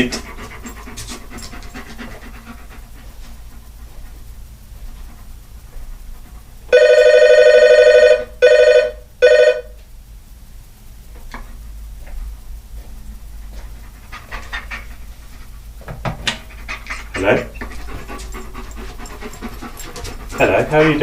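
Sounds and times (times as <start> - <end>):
doorbell ringing: 6.7 - 9.7.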